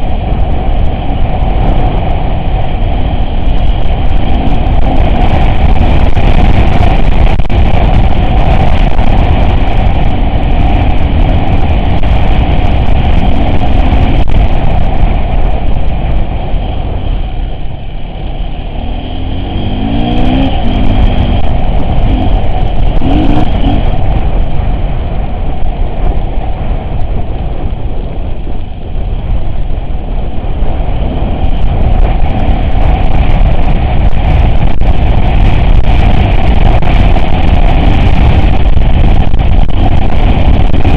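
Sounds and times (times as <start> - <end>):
off-road vehicle engine rumbling: 0.0 - 40.9.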